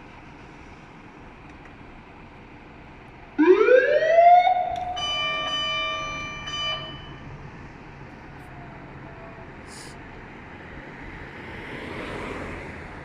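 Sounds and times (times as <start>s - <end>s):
siren rising in pitch: 3.4s - 7.2s.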